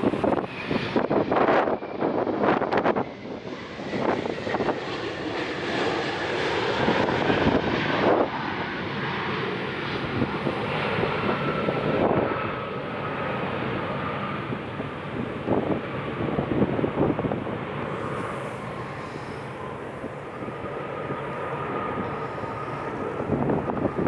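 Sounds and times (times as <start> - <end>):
airliner engines rushing: 0.0 - 24.0
faint engine whine falling in pitch: 17.8 - 24.0.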